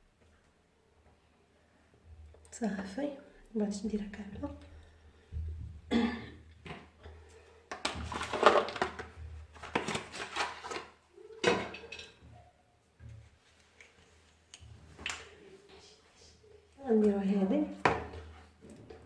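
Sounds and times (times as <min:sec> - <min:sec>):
dishes and spoons clattering: 0:11.4 - 0:12.4.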